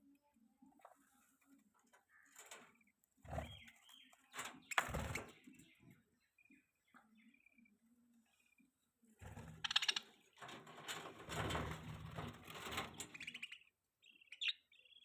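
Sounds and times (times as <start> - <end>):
budgerigars chirping softly: 1.6 - 10.4, 13.0 - 15.0.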